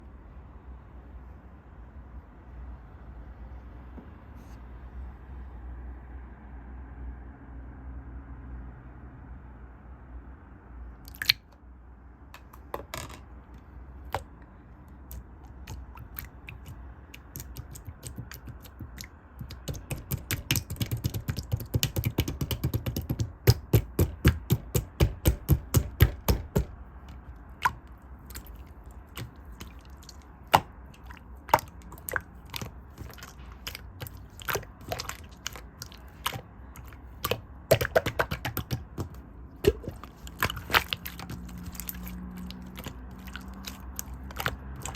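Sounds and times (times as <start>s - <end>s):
wet mouth clicks and smacks: 11.1s - 11.6s, 15.0s - 20.6s, 27.6s - 44.9s.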